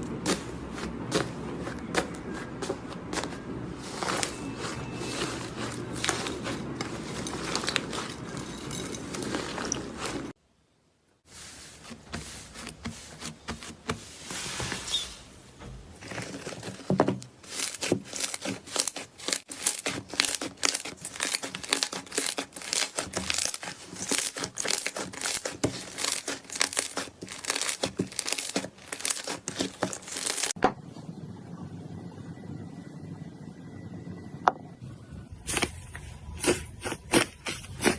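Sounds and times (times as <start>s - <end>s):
slime squishing by hand: 0.0s - 10.4s, 16.0s - 30.6s, 35.4s - 37.9s.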